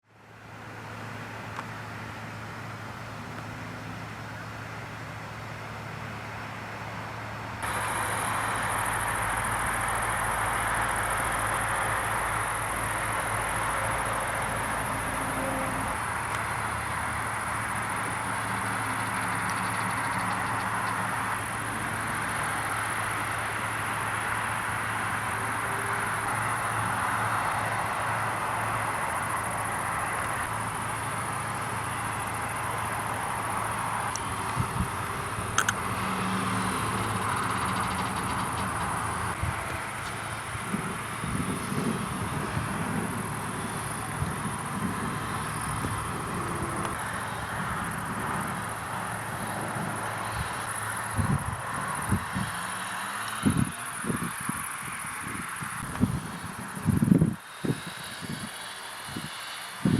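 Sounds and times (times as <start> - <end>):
rushing outdoor noise: 0.0 - 59.9
crickets chirring: 7.6 - 59.9
insects trilling: 7.6 - 59.9
broad even hiss: 55.9 - 59.9.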